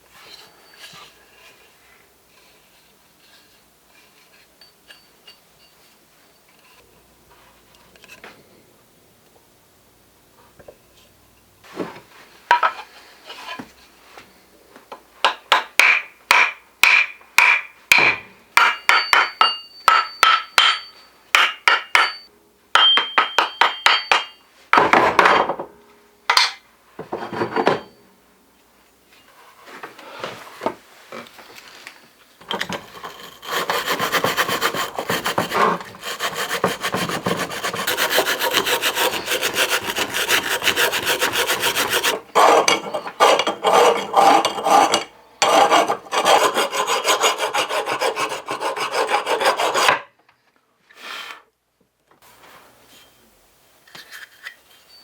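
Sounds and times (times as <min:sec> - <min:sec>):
scraping on steel hatchet head: 0:32.4 - 0:49.9
fast rasping on metal: 0:32.7 - 0:49.9.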